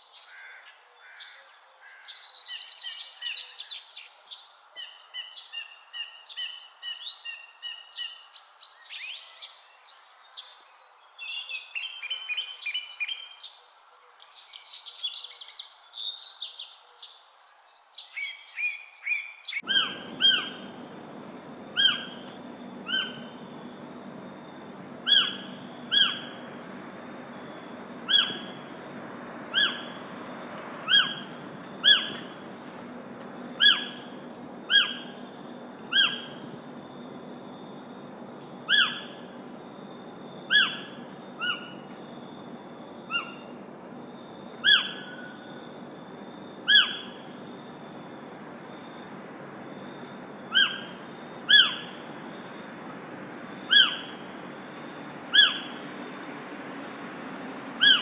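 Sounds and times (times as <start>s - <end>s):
bird call sliding downward: 19.6s - 47.5s, 49.8s - 52.1s, 53.6s - 54.3s
steady background hiss: 19.6s - 58.0s.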